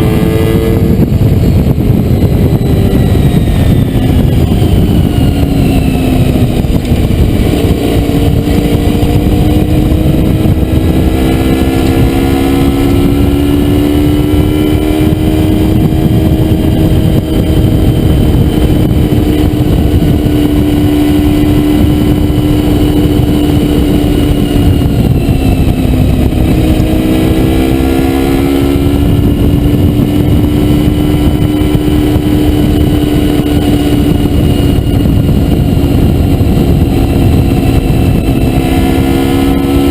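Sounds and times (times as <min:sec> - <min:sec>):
heavy low rush: 0:00.0 - 0:39.9
motorcycle engine at high revs: 0:00.0 - 0:39.9.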